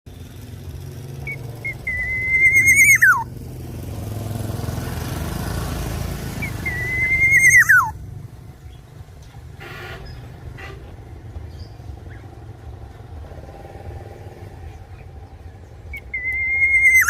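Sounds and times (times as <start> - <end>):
bird whistled calls: 1.2 - 3.3, 6.4 - 8.0, 15.9 - 17.0.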